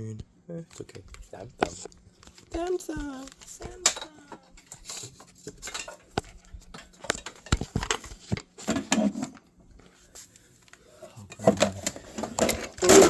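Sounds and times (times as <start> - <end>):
tools clicking on hard surface: 1.1 - 8.5.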